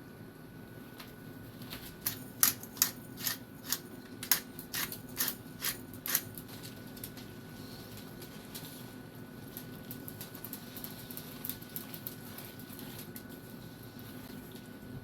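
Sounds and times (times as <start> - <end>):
sharp scraping clicks: 2.0 - 6.3.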